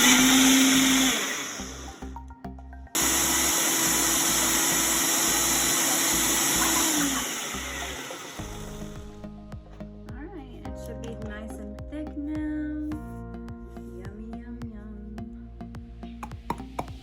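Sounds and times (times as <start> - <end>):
blender motor whining: 0.0 - 2.2, 3.0 - 9.3.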